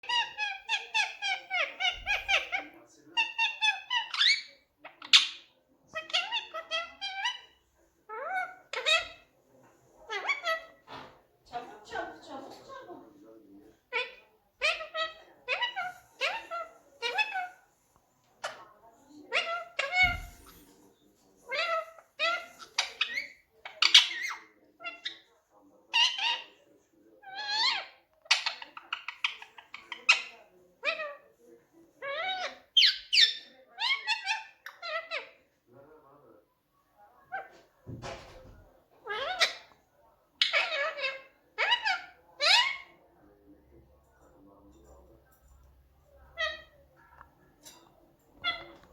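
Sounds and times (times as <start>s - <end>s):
parakeet talking: 0.0s - 9.3s, 10.1s - 10.8s, 13.8s - 17.6s, 19.3s - 20.6s, 21.5s - 25.3s, 25.9s - 26.6s, 27.2s - 31.2s, 32.0s - 35.4s, 37.3s - 39.8s, 40.4s - 43.0s, 46.2s - 48.9s.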